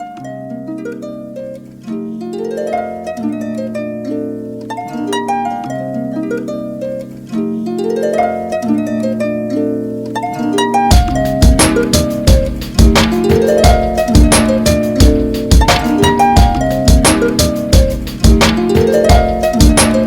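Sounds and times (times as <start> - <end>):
plucked harp-like arpeggios: 0.0 - 20.0.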